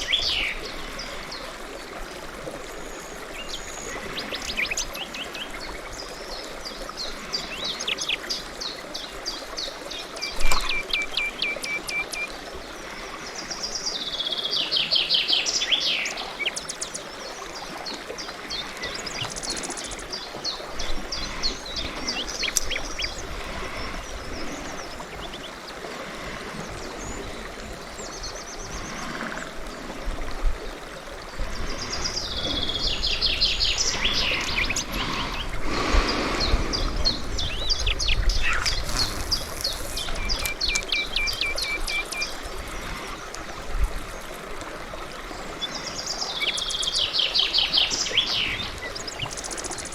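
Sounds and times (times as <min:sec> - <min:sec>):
songbirds singing trilled phrases: 0:36.2 - 0:42.4.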